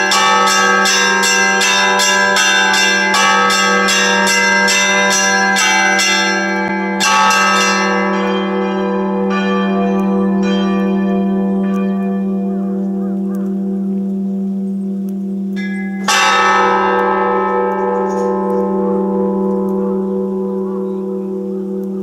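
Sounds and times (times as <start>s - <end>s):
church bells ringing: 0.0s - 22.0s.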